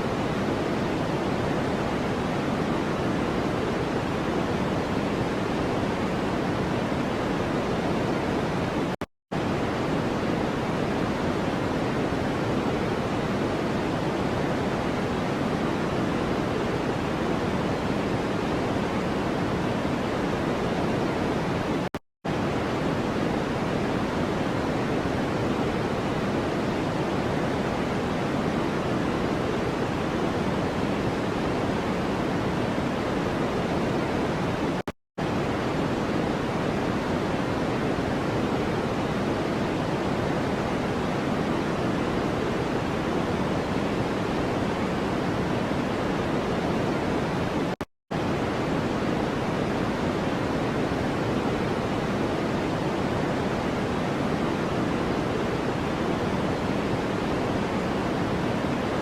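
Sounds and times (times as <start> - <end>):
white noise hiss: 0.0 - 59.0.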